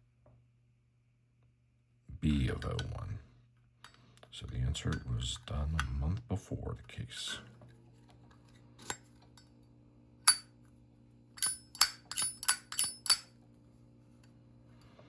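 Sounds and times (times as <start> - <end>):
metal lighters clicking and clinking: 11.4 - 13.3.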